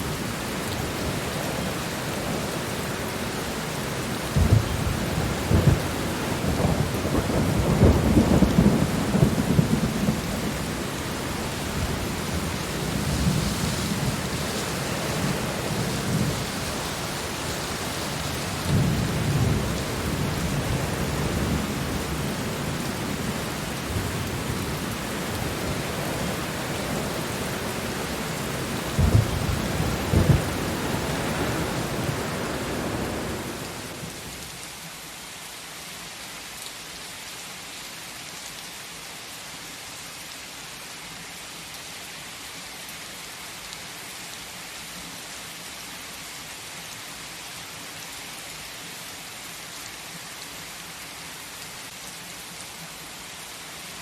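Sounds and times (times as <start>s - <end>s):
steady rain: 0.0s - 54.0s
thunder rumbling: 4.4s - 10.8s, 11.7s - 34.3s.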